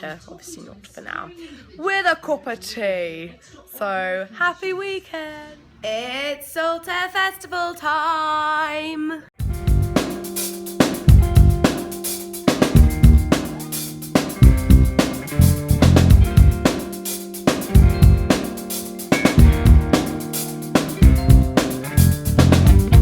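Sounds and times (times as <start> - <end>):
drum kit beat: 9.4 - 23.0
sustained guitar notes: 9.4 - 23.0.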